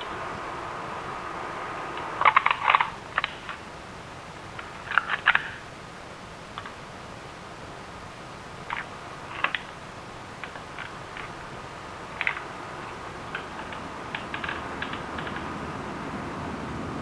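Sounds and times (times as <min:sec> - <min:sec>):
faint steady hum: 0:00.0 - 0:17.0
sharp clicks: 0:02.0 - 0:03.6, 0:12.1 - 0:15.6.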